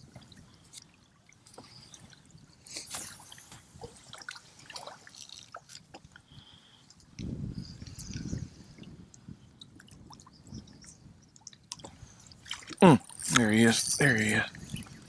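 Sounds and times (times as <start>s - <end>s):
water splashing and dripping: 7.8s - 15.0s.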